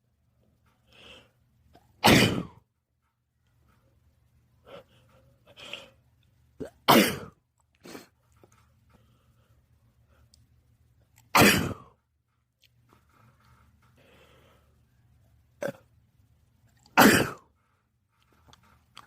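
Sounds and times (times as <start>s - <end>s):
man sneezing: 2.0s - 2.6s.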